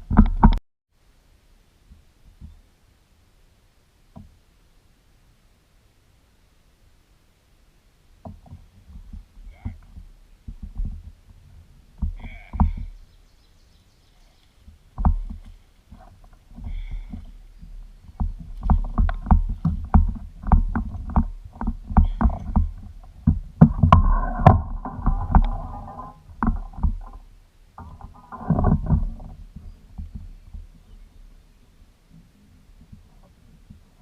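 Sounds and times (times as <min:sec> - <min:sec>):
heavy knocks and thumps on boat: 0:15.0 - 0:15.5, 0:16.6 - 0:27.2.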